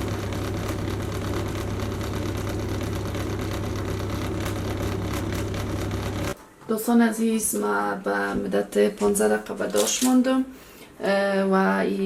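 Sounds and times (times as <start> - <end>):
oven fan humming: 0.0 - 6.4.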